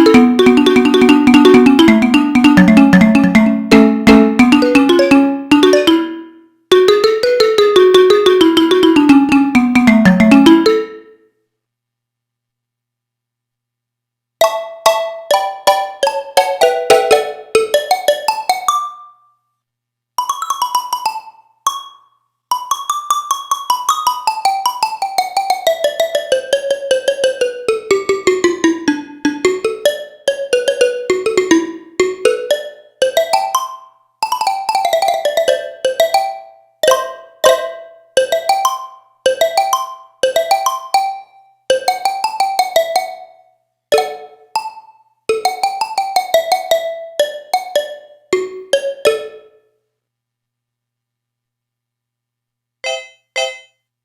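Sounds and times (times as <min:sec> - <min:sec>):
synthesizer mallet-like notes: 0:00.0 - 0:11.1, 0:52.8 - 0:53.8.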